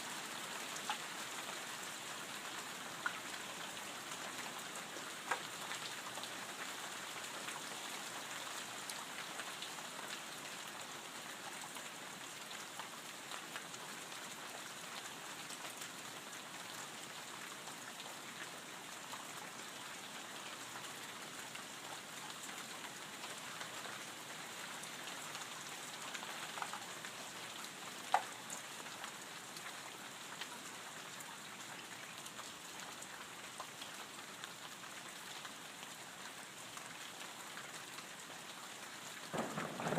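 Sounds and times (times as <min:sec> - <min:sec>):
light rain falling: 0:00.0 - 0:39.9.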